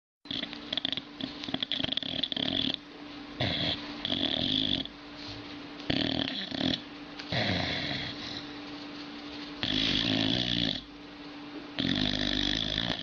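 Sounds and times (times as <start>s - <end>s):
dog snoring: 0.3s - 2.8s, 3.4s - 5.0s, 5.9s - 8.5s, 9.6s - 10.9s, 11.8s - 13.0s.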